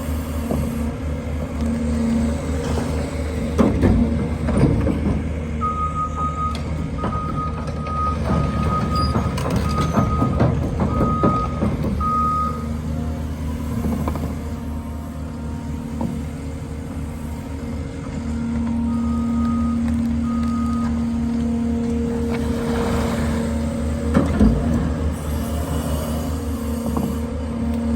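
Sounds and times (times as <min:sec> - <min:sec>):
diesel engine running: 0:00.0 - 0:27.9
backup alarm beeping: 0:05.6 - 0:12.8.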